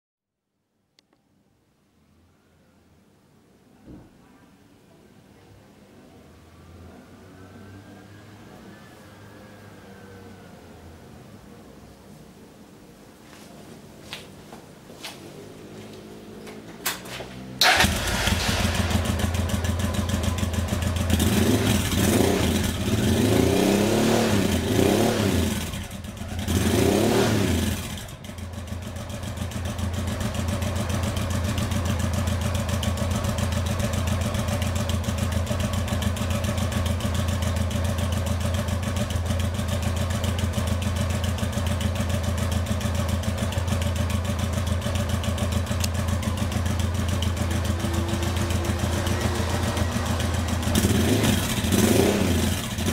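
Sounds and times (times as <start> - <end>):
motorcycle engine revving: 17.2 - 52.9
motorcycle engine idling: 17.6 - 52.9.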